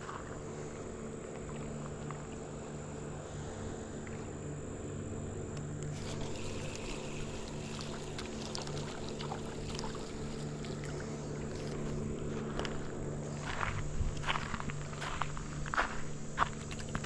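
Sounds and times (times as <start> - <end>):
motor humming: 0.0 - 17.0
water sounds: 5.9 - 13.5.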